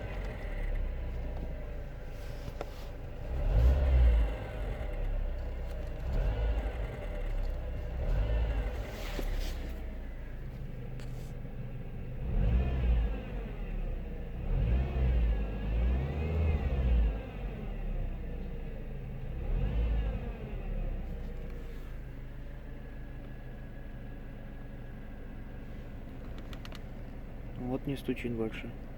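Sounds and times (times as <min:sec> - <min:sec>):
car engine revving: 0:00.0 - 0:21.9.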